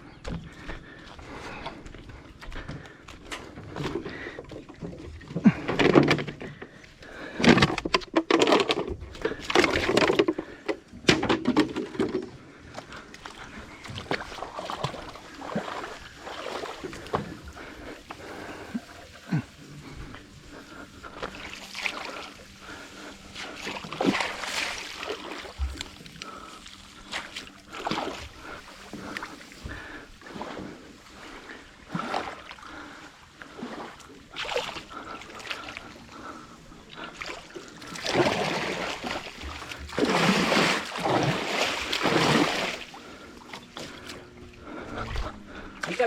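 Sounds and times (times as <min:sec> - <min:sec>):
water splashing against boat: 0:00.0 - 0:46.0.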